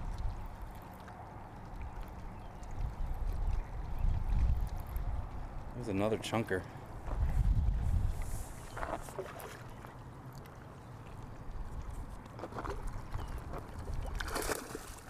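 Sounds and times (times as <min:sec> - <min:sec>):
wind rumbling on microphone: 0:00.0 - 0:00.8, 0:01.6 - 0:06.1, 0:06.8 - 0:09.2, 0:11.2 - 0:15.0
water splash: 0:13.8 - 0:15.0.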